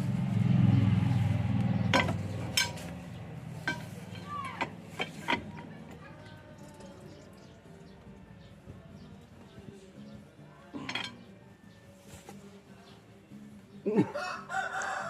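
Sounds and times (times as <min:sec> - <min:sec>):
low engine hum: 0:00.0 - 0:07.4
metal tools clinking: 0:01.9 - 0:05.9, 0:10.8 - 0:11.2.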